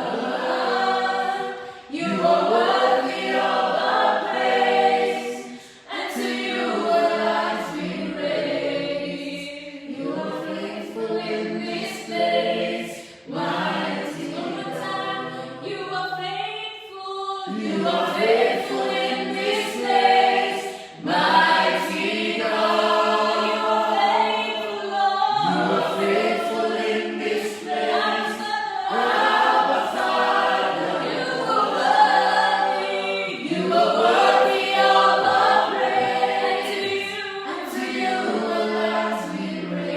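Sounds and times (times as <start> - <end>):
choir singing worship song: 0.0 - 39.9.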